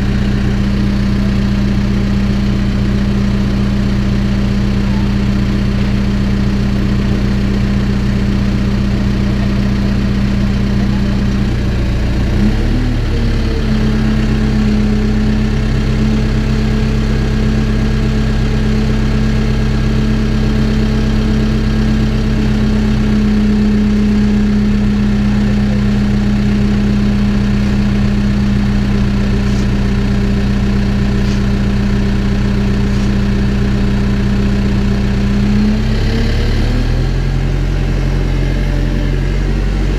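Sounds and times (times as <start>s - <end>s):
diesel engine running: 0.0s - 39.9s.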